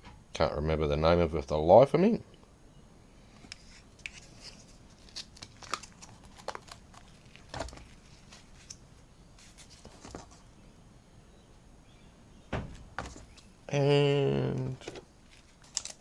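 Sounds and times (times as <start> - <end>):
paint bottles clicking and rustling: 4.0 - 8.8, 14.8 - 16.0.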